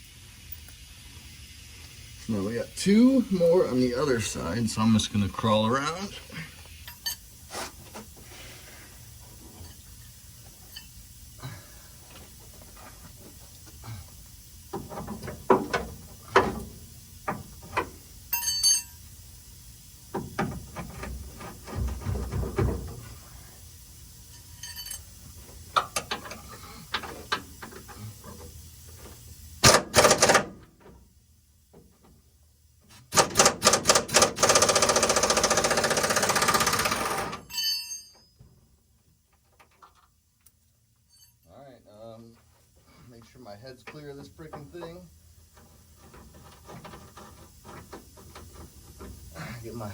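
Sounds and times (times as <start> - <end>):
tools clanking and knocking: 14.7 - 18.9, 25.7 - 28.5, 33.1 - 38.4, 45.6 - 49.2
pneumatic impact wrench hammering: 29.6 - 30.7, 32.9 - 37.6.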